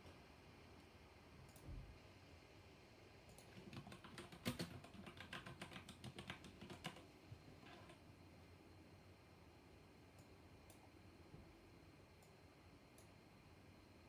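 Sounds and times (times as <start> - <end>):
mechanical keyboard clicks: 3.4 - 7.1.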